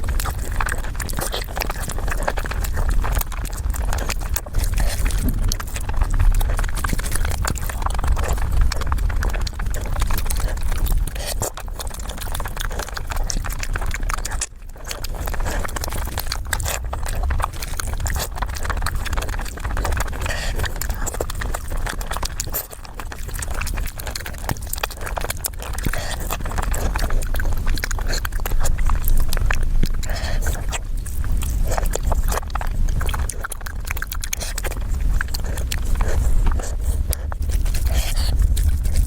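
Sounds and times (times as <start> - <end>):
chewing and biting food: 0.0 - 39.0
low rumble: 28.3 - 39.0.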